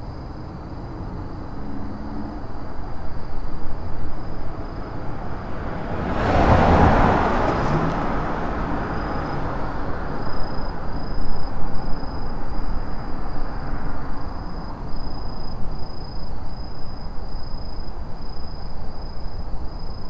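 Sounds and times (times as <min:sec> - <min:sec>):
car passing by: 0:04.0 - 0:14.0.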